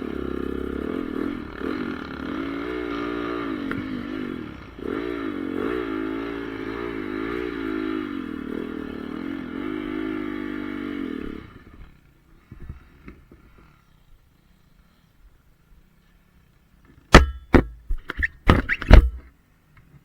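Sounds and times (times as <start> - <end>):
motocross bike engine under throttle: 0.0 - 13.9.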